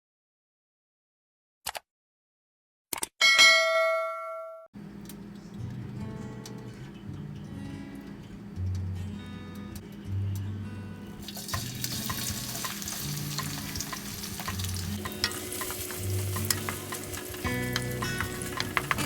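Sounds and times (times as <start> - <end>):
soft background music: 5.2 - 19.0
food sizzling in a pan: 11.2 - 19.0
utensil clicks stirring food: 11.2 - 19.0.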